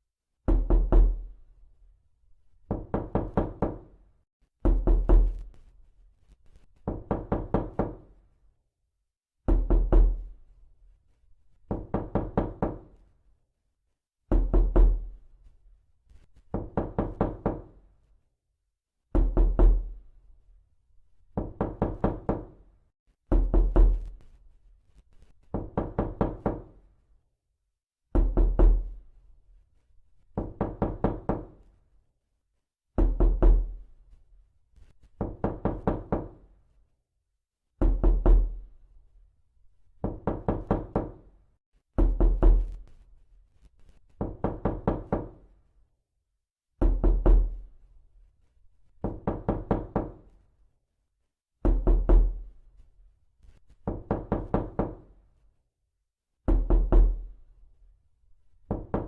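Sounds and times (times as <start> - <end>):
knuckles knocking on door: 0.5 - 1.3, 2.7 - 3.9, 6.9 - 8.1, 11.7 - 12.9, 16.5 - 17.8, 21.4 - 22.6, 23.3 - 24.1, 25.5 - 26.7, 28.2 - 28.9, 30.4 - 31.5, 35.2 - 36.4, 37.8 - 38.6, 40.0 - 41.2, 44.2 - 45.4, 46.8 - 47.6, 49.0 - 50.2, 51.6 - 52.4, 53.8 - 55.0, 56.5 - 57.2, 58.7 - 59.0.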